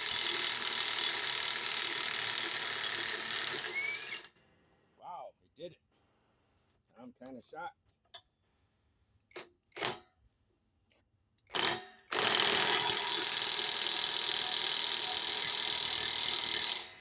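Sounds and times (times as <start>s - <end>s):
cordless impact wrench running: 0.0s - 4.3s, 11.5s - 17.0s.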